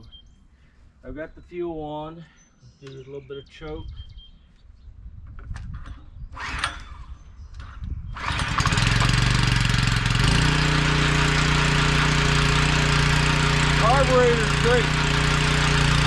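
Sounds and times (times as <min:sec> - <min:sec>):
small gasoline engine pull-started: 0:05.7 - 0:16.0.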